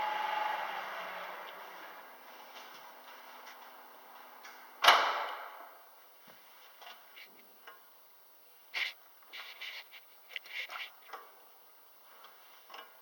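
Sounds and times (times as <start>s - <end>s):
platform lift drive humming: 0.0s - 4.3s.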